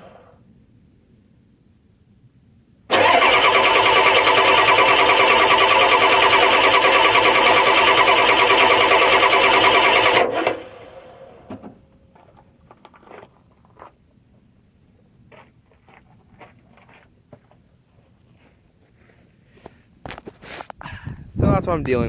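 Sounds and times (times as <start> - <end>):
starter motor cranking engine: 2.9 - 11.4.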